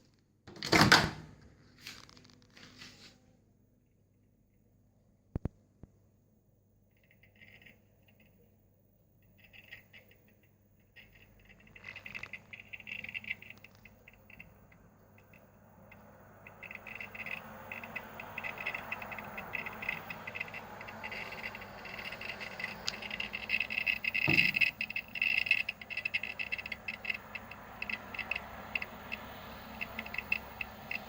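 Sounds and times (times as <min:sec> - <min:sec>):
microwave oven crackling: 0:09.5 - 0:31.0.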